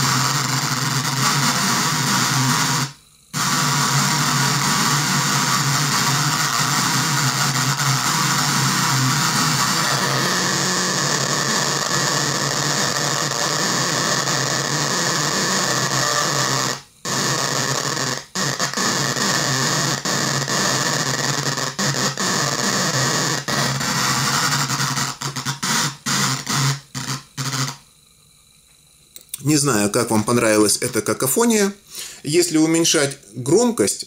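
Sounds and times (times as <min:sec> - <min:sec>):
harsh relay-driven loudspeaker noise: 0:00.0 - 0:16.9, 0:29.4 - 0:34.0.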